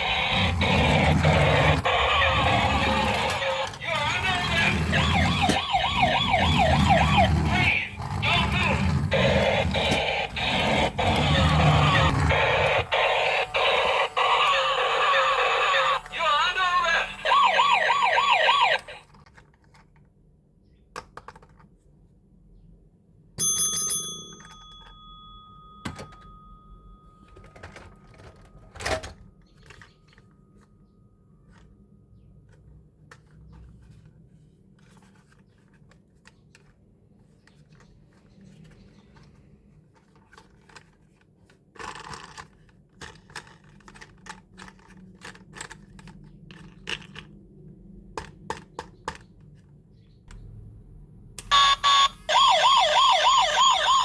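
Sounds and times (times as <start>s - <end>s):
toy electronic siren: 0.0s - 19.1s, 51.4s - 54.0s
clicks and taps of toy handling: 20.9s - 21.9s, 38.6s - 47.3s, 48.1s - 50.4s
bell-like ding: 23.4s - 27.2s.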